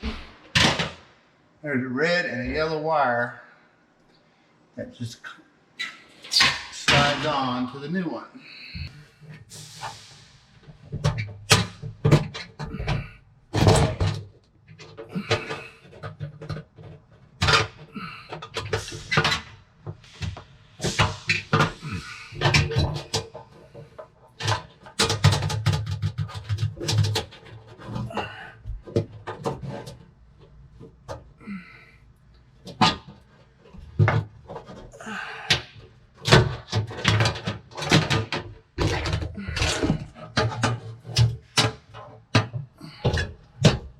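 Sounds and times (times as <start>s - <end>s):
oven element clicks and rattles: 22.4s - 31.3s, 35.5s - 43.9s.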